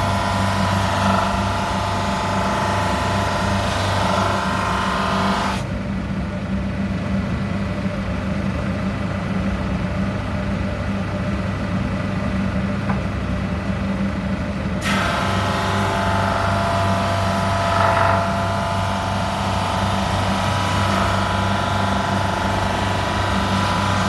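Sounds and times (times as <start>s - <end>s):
drum sander motor hum: 0.0s - 5.6s, 14.8s - 24.0s.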